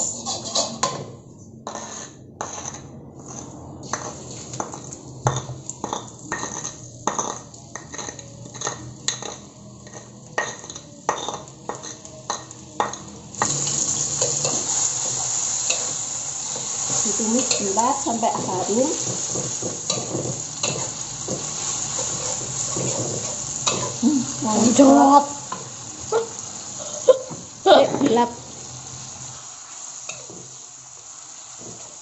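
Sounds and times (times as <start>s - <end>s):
spoon scraping stone mortar: 1.6s - 4.1s
paste sizzling in hot oil: 9.8s - 32.0s.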